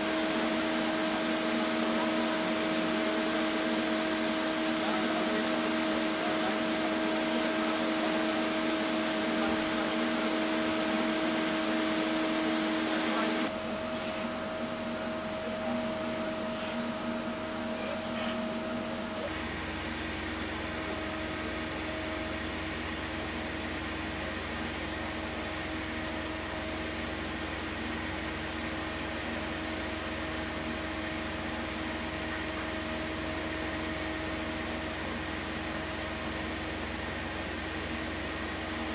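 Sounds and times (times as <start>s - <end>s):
steady mechanical hum: 0.0s - 38.9s.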